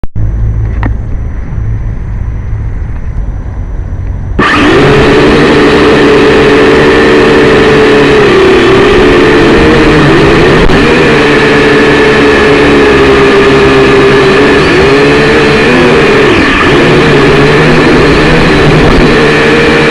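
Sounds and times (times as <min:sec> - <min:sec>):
low rumble: 0:00.1 - 0:05.5
quadcopter motors buzzing: 0:04.4 - 0:19.9.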